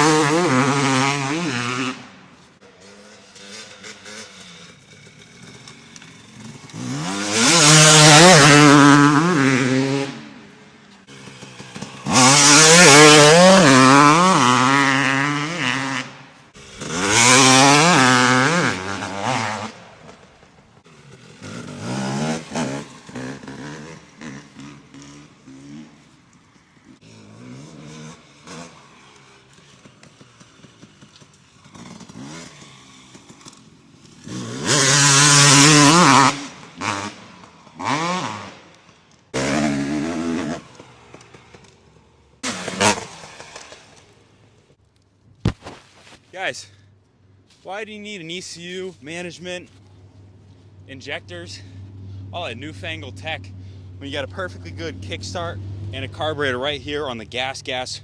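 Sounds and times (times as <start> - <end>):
motocross engine accelerating: 0.0 - 38.6, 39.4 - 44.3.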